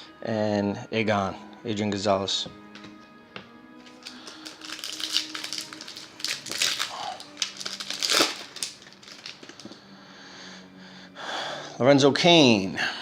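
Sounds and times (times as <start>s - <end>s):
foil wrapper crinkling: 3.8s - 9.8s.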